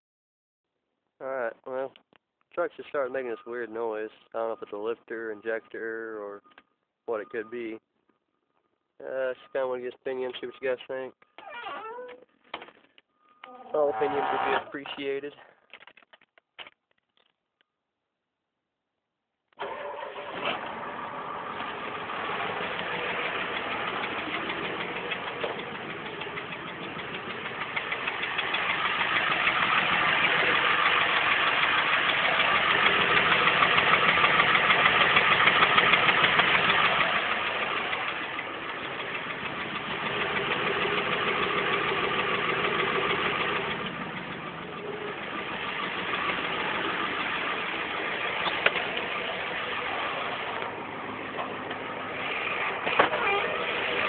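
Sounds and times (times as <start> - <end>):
diesel engine clattering: 19.6 - 54.0.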